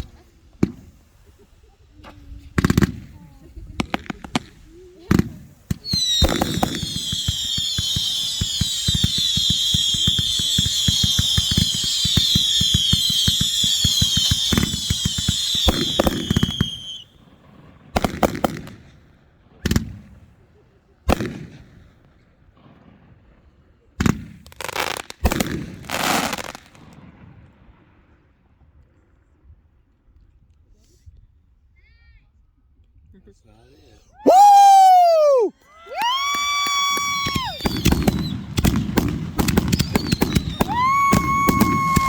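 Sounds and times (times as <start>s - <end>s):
fireworks crackling pops: 0.0s - 20.2s, 21.1s - 23.1s, 24.0s - 27.4s, 34.3s - 42.0s
firework bangs: 2.1s - 20.2s, 24.0s - 27.4s, 36.0s - 42.0s
shrill firework whistles: 5.8s - 17.2s, 34.2s - 38.7s, 39.4s - 42.0s.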